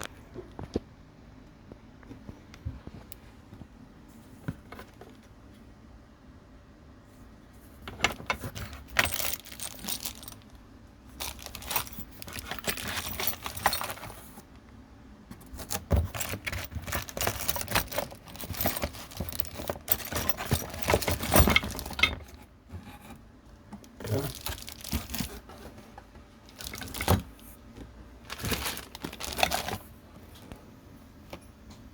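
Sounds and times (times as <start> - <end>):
metal parts clinking and rattling: 7.8 - 14.4, 15.4 - 22.5, 24.0 - 25.6, 26.5 - 27.5, 28.2 - 29.9.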